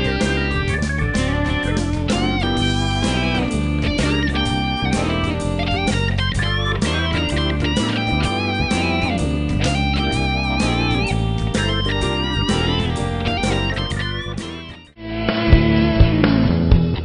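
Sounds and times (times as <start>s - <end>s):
electric guitar music: 0.0s - 17.0s
steady bass line: 0.0s - 17.0s.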